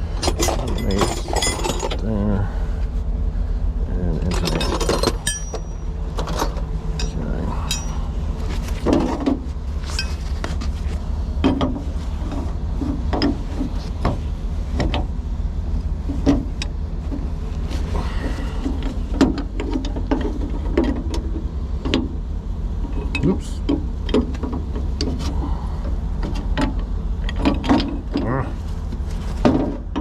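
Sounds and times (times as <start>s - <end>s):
low rumble: 0.0s - 30.0s
hand tools clicking on metal fittings: 7.0s - 8.0s.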